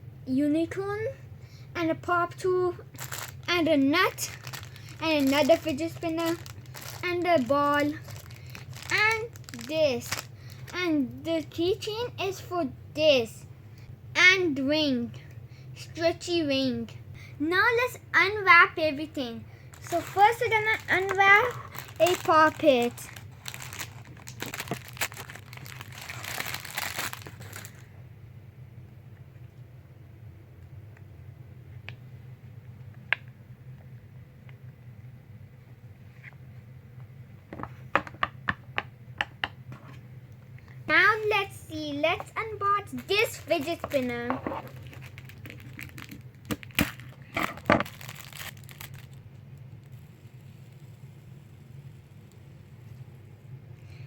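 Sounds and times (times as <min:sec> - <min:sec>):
wrapping crinkling and rustling: 0:02.3 - 0:11.5, 0:19.6 - 0:27.9, 0:40.6 - 0:51.0.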